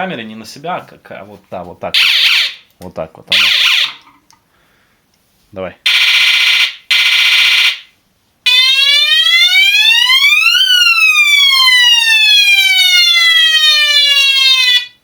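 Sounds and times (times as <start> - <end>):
electronic bicycle siren wail: 3.4 - 4.0, 5.9 - 7.9, 8.5 - 15.0.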